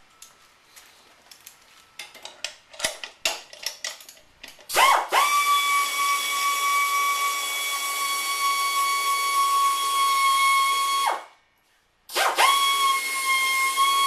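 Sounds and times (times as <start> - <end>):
light metallic clicks and knocks: 1.3 - 4.7
power tool whining: 12.2 - 14.0.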